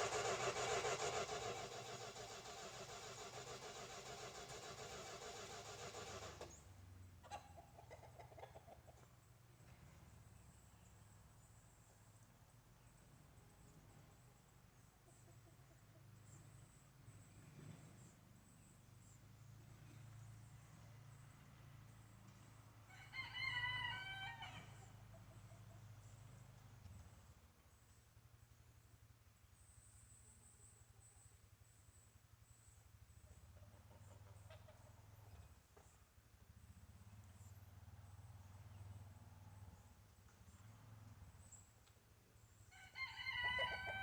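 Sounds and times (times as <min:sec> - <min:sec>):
faint rapid pulses: 0:00.0 - 0:06.7
rooster crowing: 0:22.9 - 0:24.9, 0:42.7 - 0:44.0.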